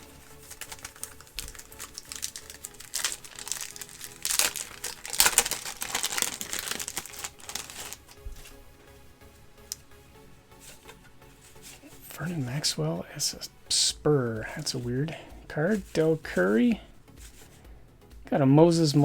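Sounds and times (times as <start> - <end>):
wax paper wrapper crinkling and tearing: 0.0 - 8.6.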